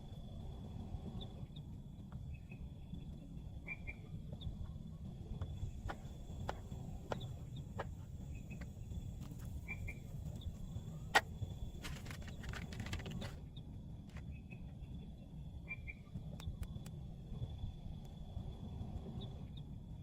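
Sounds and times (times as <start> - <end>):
insect trill: 0.0 - 13.4
low steady rumble: 0.0 - 20.0.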